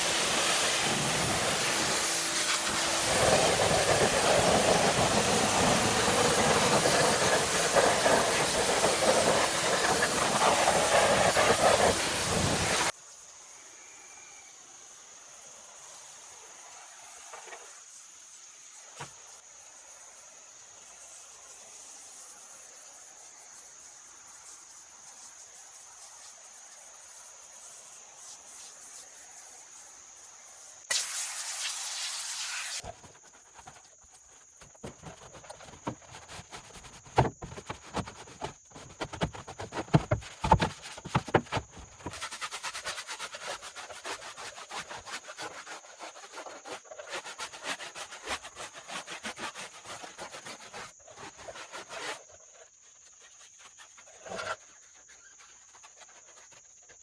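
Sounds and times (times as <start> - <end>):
brush scrubbing: 0.0 - 12.9, 32.8 - 57.0
spray hissing: 0.0 - 12.9.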